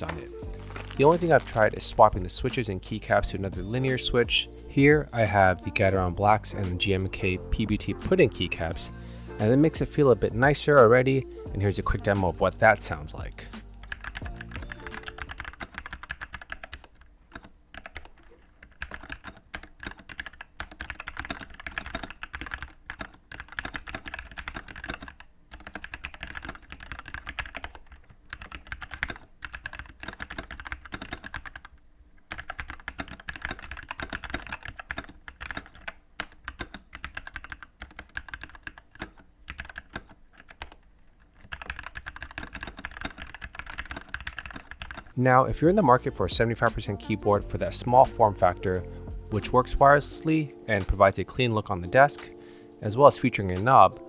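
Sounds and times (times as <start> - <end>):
mechanical keyboard typing: 9.5 - 47.4.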